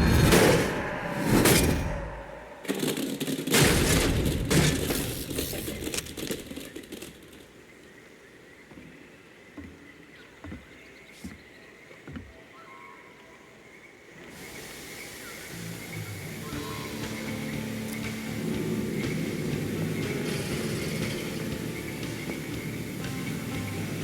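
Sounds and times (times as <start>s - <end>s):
loud crashing and banging: 0.0s - 7.1s, 16.6s - 24.0s.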